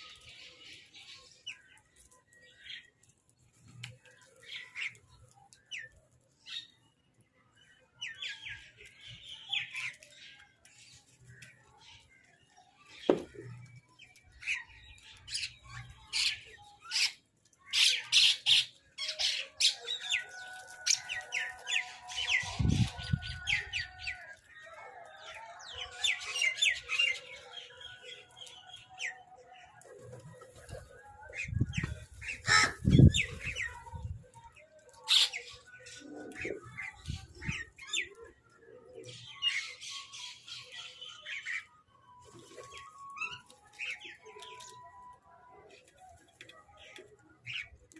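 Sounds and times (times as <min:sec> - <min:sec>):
crows and mynahs calling: 0:32.2 - 0:33.2.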